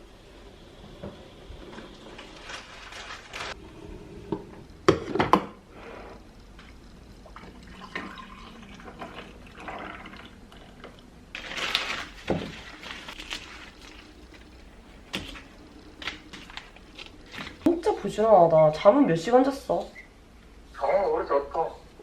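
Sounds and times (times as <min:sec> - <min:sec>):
liquid pouring splash: 0:07.3 - 0:10.3.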